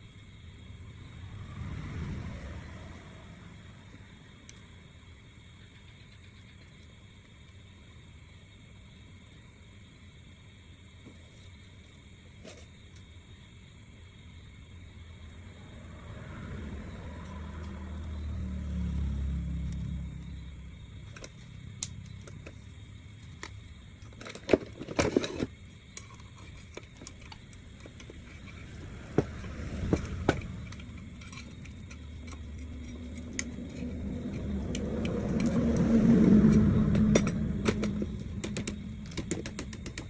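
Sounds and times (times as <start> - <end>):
vehicle engine rumble passing: 0.7 - 4.4, 15.0 - 24.0, 27.8 - 40.0.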